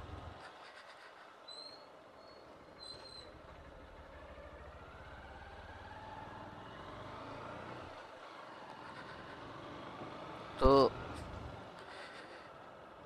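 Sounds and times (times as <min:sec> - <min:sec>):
vehicle engine speeding up: 0:04.2 - 0:11.7.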